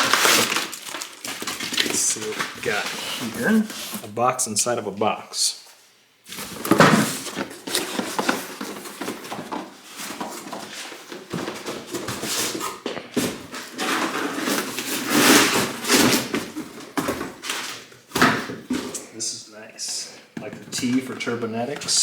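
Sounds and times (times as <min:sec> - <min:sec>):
cardboard box rustling and scraping: 0:00.0 - 0:04.1, 0:06.3 - 0:19.1.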